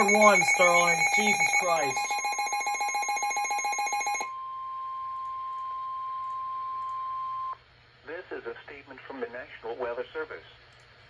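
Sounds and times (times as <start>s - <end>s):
rapid electronic alarm beeps: 0.0s - 4.3s
steady single-pitch tone: 0.0s - 6.1s
click: 10.7s - 10.9s.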